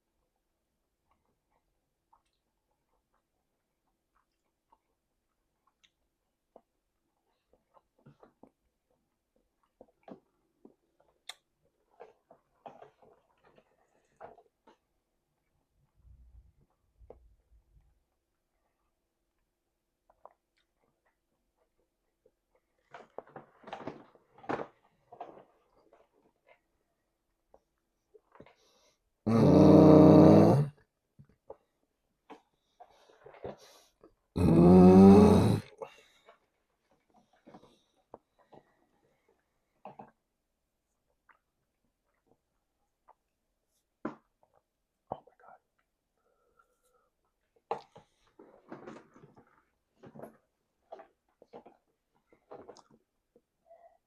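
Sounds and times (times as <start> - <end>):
wet chewing and smacking: 0.9 - 15.6.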